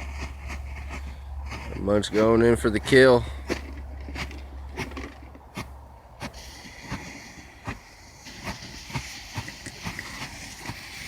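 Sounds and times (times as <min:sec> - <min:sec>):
log fire crackling and popping: 0:02.9 - 0:11.0.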